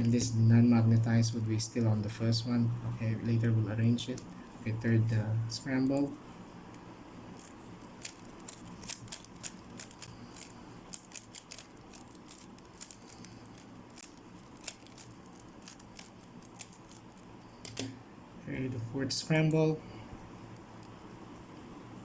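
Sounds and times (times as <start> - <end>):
puzzle cube plastic clicking: 7.4 - 17.9.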